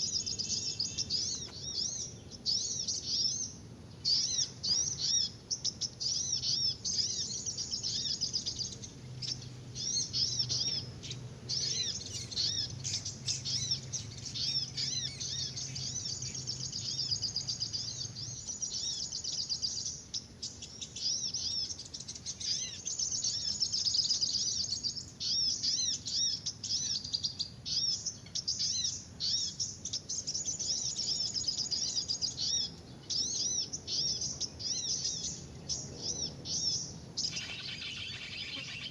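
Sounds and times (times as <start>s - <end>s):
small songbirds chirping: 0.0s - 38.9s.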